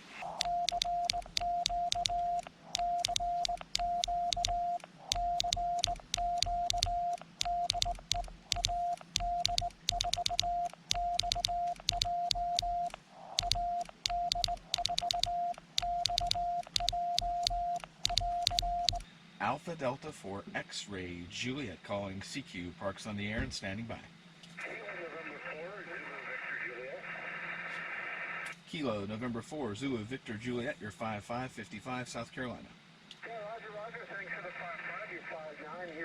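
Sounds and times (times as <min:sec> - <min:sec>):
key clicks: 0:00.2 - 0:19.0
morse code beeps: 0:00.2 - 0:19.0.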